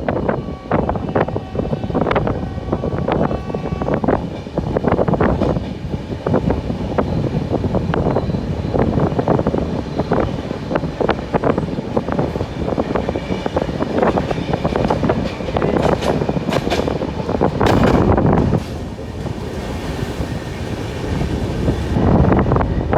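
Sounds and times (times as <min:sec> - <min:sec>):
train rumble: 0:00.0 - 0:22.9
rattling clacks: 0:13.5 - 0:18.9.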